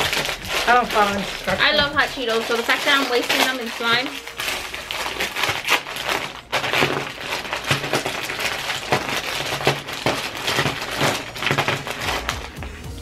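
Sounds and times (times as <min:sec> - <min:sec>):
chips crunching: 0:00.0 - 0:13.0
snack bag crinkling: 0:00.0 - 0:13.0.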